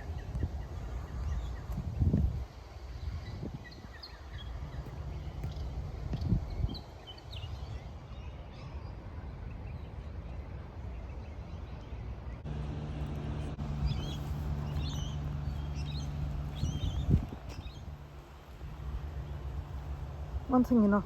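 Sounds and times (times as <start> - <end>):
low outdoor rumble: 10.3 - 21.0
small birds chirping: 11.0 - 21.0.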